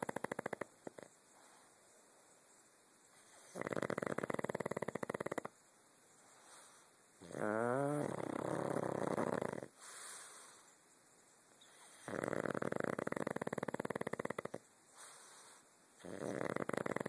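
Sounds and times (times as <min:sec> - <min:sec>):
soft breath: 0:01.3 - 0:02.4, 0:06.1 - 0:07.1, 0:09.7 - 0:11.0, 0:14.9 - 0:15.8
person snoring: 0:03.4 - 0:05.5, 0:07.2 - 0:09.7, 0:12.0 - 0:14.6, 0:16.0 - 0:17.0.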